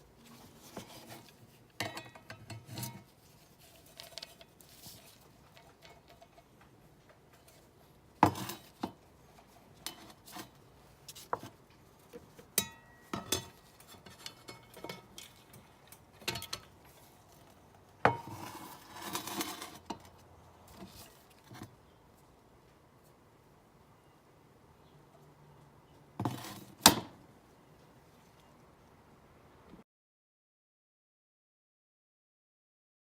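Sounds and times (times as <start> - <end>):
scraping rustle: 0.1 - 6.6, 13.3 - 21.8.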